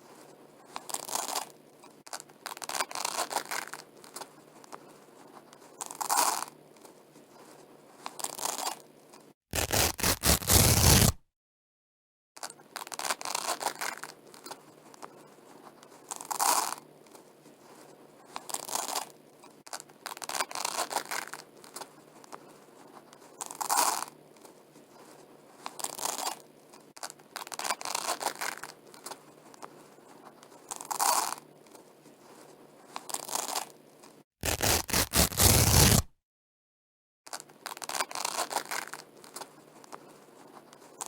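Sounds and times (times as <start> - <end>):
velcro ripping apart: 9.5 - 11.2, 34.4 - 36.1, 37.6 - 39.0.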